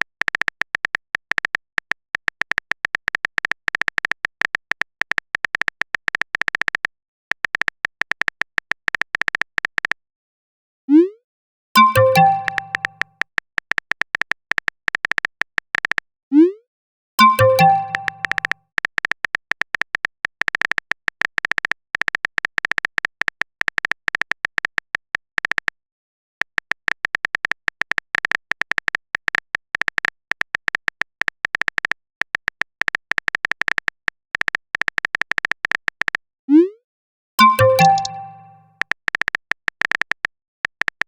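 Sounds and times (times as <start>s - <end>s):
message notification chime: 11.8s - 13.0s, 17.2s - 18.5s, 37.4s - 38.7s
phone keyboard tapping clicks: 11.8s - 16.0s, 17.2s - 25.7s, 37.4s - 41.0s.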